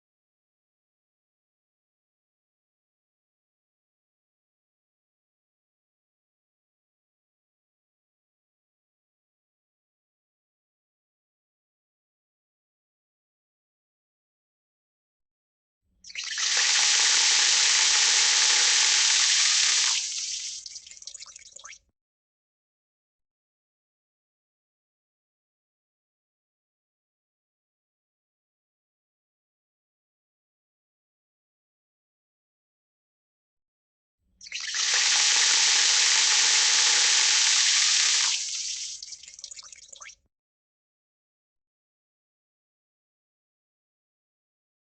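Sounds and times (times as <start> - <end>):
tap water running: 16.1 - 21.7, 34.5 - 40.1.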